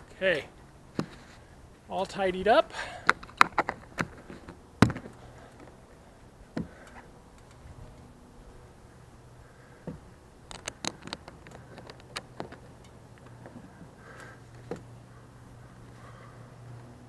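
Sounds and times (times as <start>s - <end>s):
sharp clicks and light taps: 9.9s - 14.9s.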